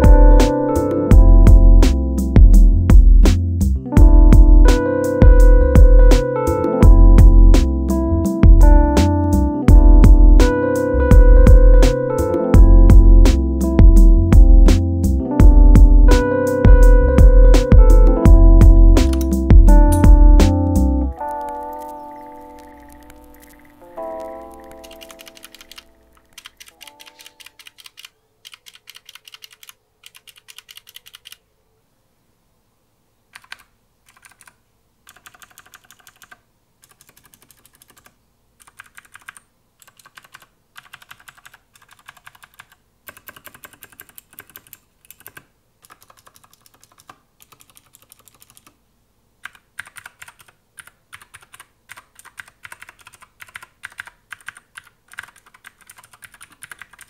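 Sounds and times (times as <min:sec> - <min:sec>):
clicky mechanical keyboard typing: 0:19.0 - 0:20.1, 0:21.1 - 0:31.4, 0:33.3 - 0:48.8, 0:49.4 - 0:57.0.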